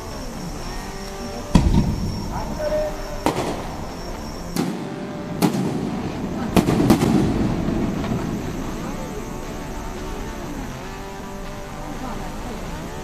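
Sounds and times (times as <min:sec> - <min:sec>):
crackling rumble: 0:00.0 - 0:13.0
fireworks bangs: 0:01.5 - 0:09.6.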